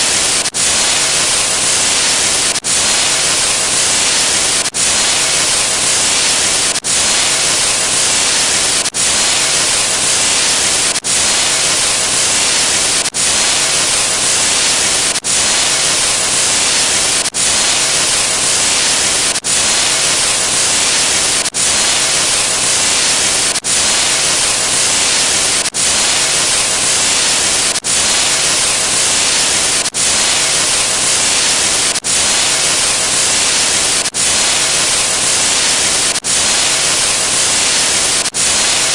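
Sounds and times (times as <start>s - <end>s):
loud static hiss: 0.0s - 38.9s.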